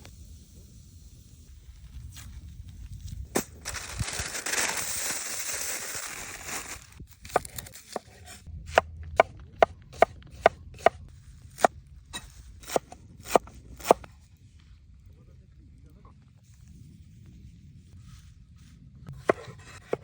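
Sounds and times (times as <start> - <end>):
rustling: 1.8 - 8.5.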